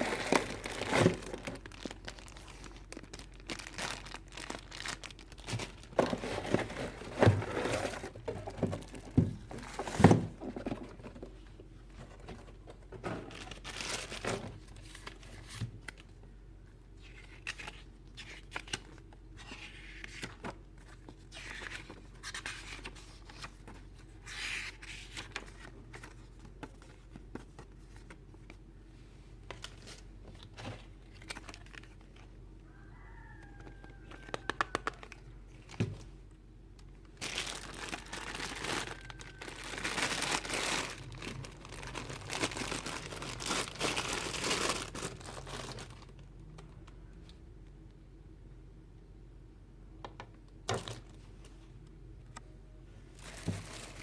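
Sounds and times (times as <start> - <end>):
packaging crinkling and tearing: 0.0 - 10.2, 13.3 - 16.0, 29.5 - 32.3, 33.8 - 35.8, 37.1 - 46.3, 53.2 - 54.0.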